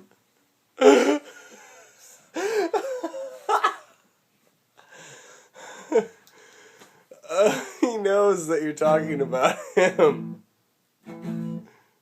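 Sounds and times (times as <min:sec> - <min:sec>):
person laughing: 0:02.4 - 0:04.0, 0:09.1 - 0:10.3.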